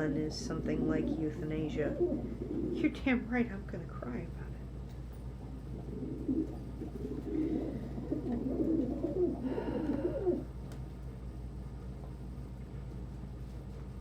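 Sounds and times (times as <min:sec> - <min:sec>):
pigeons cooing: 0:00.0 - 0:03.2, 0:05.4 - 0:10.6.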